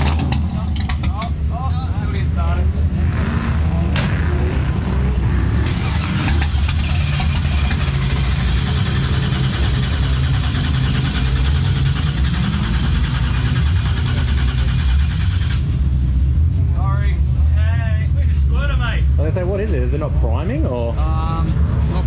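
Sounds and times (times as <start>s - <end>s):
car engine rumbling: 0.0s - 22.0s.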